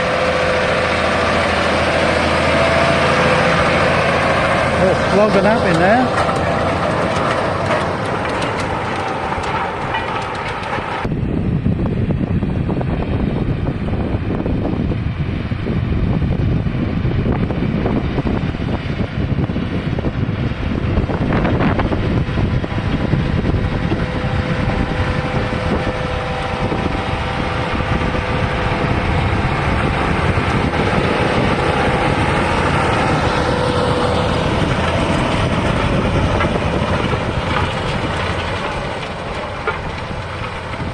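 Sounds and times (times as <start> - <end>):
tractor engine under load: 0.0 - 40.9.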